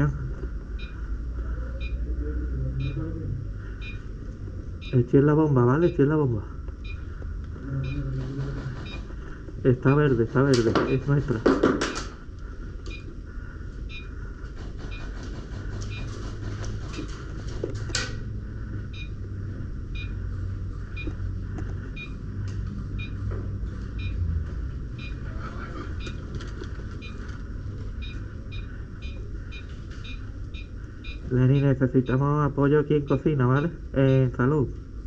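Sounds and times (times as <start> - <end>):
low steady hum: 0.0 - 35.0
electronic prop beeping: 0.7 - 1.2, 2.7 - 4.2, 4.8 - 12.2, 12.9 - 13.1, 13.9 - 19.3, 19.9 - 20.3, 20.9 - 26.3, 26.9 - 32.4.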